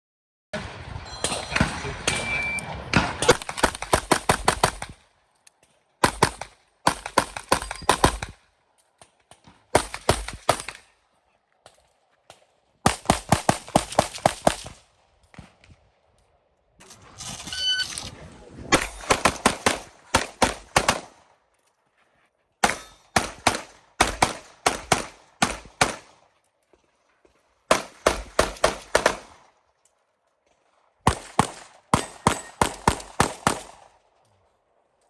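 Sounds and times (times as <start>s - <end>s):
rapid pistol fire: 3.0s - 5.0s, 6.0s - 8.4s, 9.7s - 10.8s, 12.8s - 14.8s, 19.0s - 21.2s, 22.6s - 26.2s, 27.7s - 29.4s, 31.0s - 33.9s.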